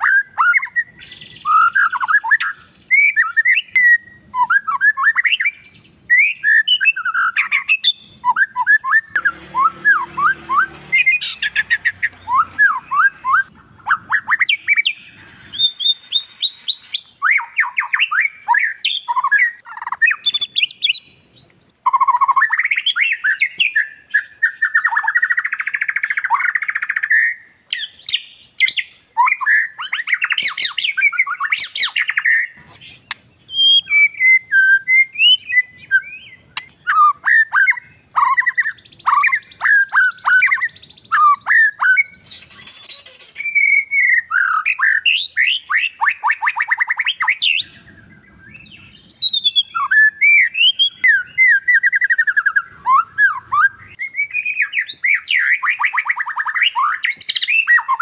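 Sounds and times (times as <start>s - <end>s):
songbird singing: 0.0s - 58.0s.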